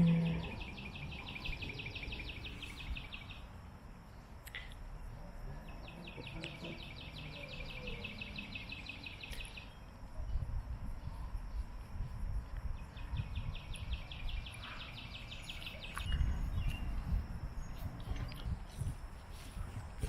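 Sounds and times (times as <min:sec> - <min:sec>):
insect chirping trill: 0:00.0 - 0:20.0
wind rumbling on microphone: 0:09.3 - 0:20.0.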